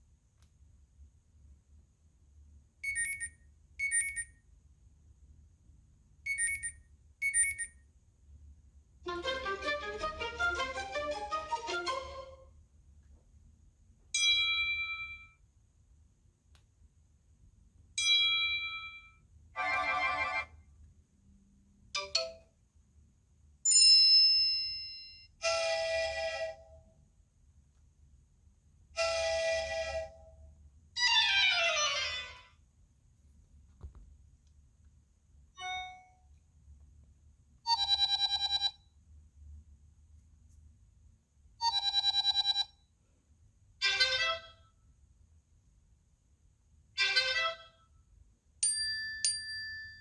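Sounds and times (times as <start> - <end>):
bell-like phone chime: 2.8 - 4.3, 6.3 - 7.7, 35.6 - 36.2
electronic ringtone beeping: 2.8 - 4.3, 6.3 - 7.7, 19.6 - 20.5, 35.6 - 36.1, 37.7 - 38.8, 41.6 - 42.8
bell-like chime: 23.7 - 25.3, 48.6 - 50.0.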